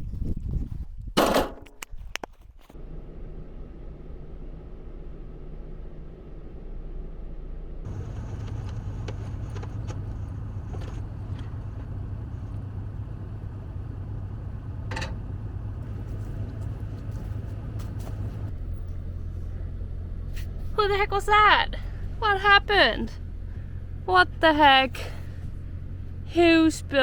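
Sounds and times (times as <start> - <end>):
vehicle engine humming: 2.7 - 27.0
clicks and knocks: 14.8 - 15.4.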